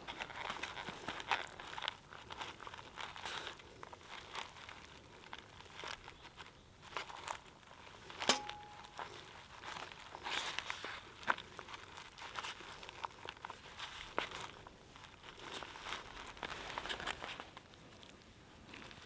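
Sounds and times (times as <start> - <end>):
food packaging crinkling: 0.0 - 8.8, 9.7 - 19.0
sharp ringing clink: 8.2 - 9.0.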